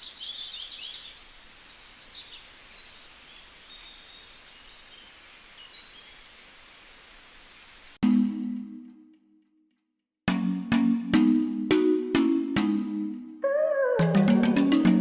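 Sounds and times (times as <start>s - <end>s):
outdoor background hiss: 0.0s - 8.0s
small birds chirping: 0.0s - 8.0s.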